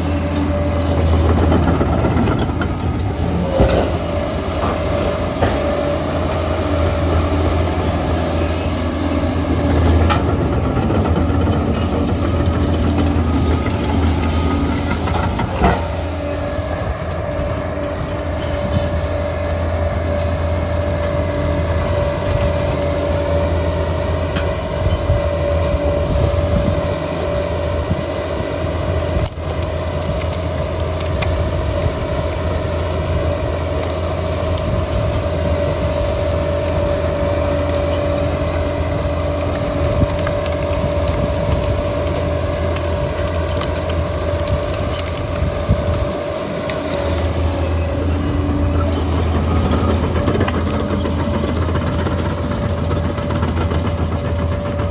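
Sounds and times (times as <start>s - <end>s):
dozer engine whine and drone: 0.0s - 54.9s
rock and wood crunching: 36.2s - 54.9s.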